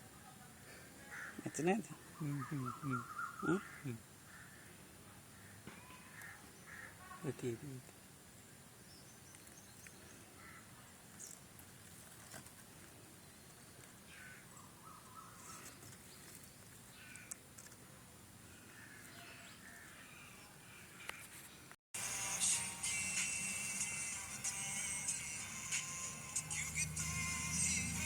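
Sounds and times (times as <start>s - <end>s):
distant bird calls: 1.0s - 7.4s, 8.8s - 11.4s, 13.2s - 17.4s
steady low hiss: 7.3s - 14.2s, 20.1s - 28.0s.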